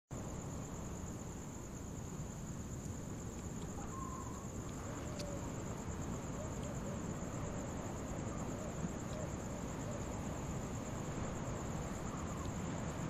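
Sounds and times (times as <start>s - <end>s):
crickets chirping: 0.1s - 13.0s
faint distant call: 3.6s - 5.7s.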